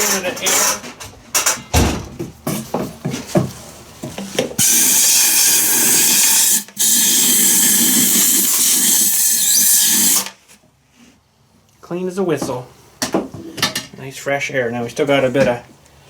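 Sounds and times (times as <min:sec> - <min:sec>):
air blow gun hissing: 0:04.6 - 0:10.4.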